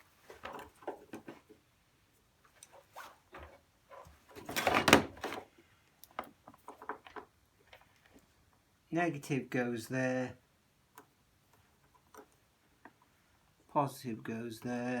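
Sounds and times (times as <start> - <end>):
scraping rustle: 2.4 - 5.6.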